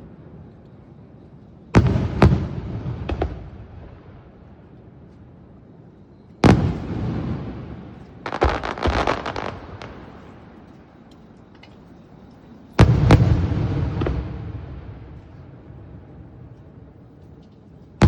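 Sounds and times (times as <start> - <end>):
fireworks popping: 8.2 - 10.2
fireworks bangs with rumble: 12.8 - 15.1.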